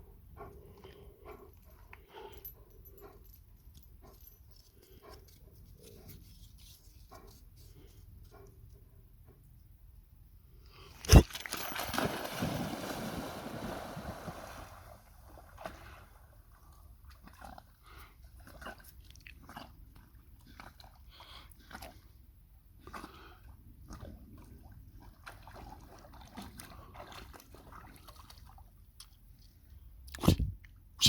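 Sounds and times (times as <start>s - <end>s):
loud splash into water: 11.1s - 14.8s
water sloshing: 11.2s - 16.0s
dog swimming splashes and drips: 11.2s - 22.0s, 23.9s - 29.4s.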